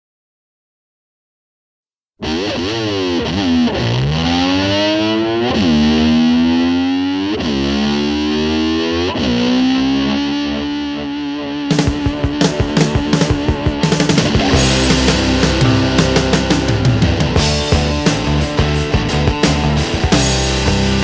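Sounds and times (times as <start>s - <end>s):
distorted electric slide guitar: 2.2s - 21.0s.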